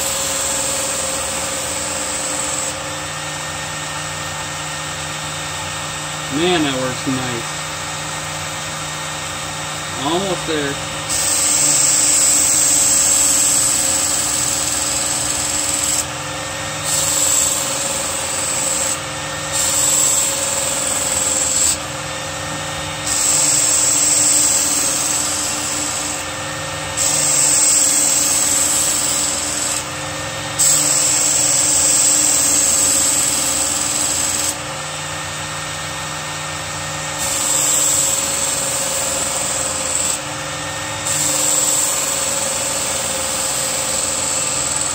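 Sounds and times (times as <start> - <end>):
belt sharpener motor humming: 0.0 - 36.2, 37.0 - 44.9
knife grinding on abrasive belt: 11.1 - 16.1, 16.8 - 21.8, 23.0 - 26.2, 27.0 - 29.8, 30.6 - 34.6, 37.2 - 40.2, 41.0 - 44.9.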